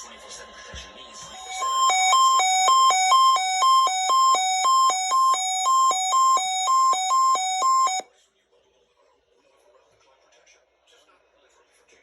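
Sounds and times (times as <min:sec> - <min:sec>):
high-low electronic alert beeps: 0:01.1 - 0:08.0.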